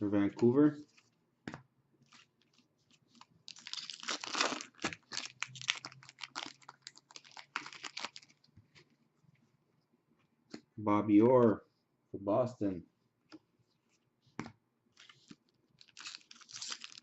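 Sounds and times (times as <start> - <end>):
trading cards being handled: 14.4 - 17.0.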